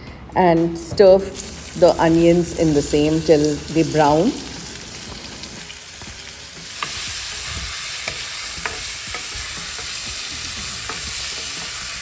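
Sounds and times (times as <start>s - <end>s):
onions sizzling in oil: 1.4s - 12.0s
spoon scraping pot: 6.7s - 12.0s.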